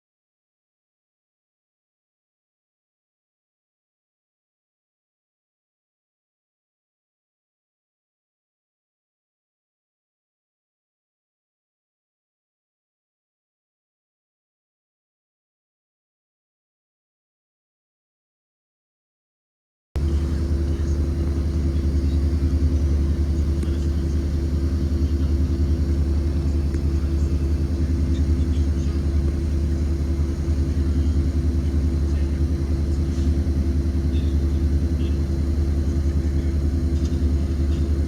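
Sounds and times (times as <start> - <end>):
bus engine low rumble: 20.0 - 38.0.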